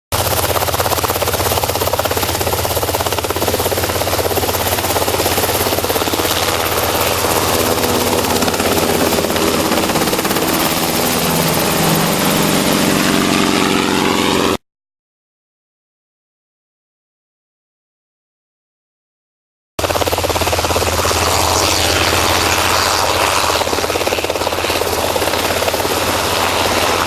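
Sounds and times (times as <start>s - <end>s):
helicopter rotor chopping: 0.1s - 14.6s, 19.8s - 27.0s
steady engine tone: 0.2s - 14.6s, 19.8s - 27.0s.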